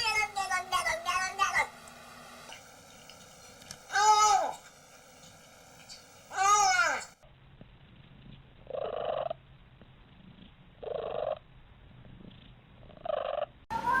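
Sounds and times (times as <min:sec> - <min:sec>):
cat purring: 0:07.6 - 0:13.6.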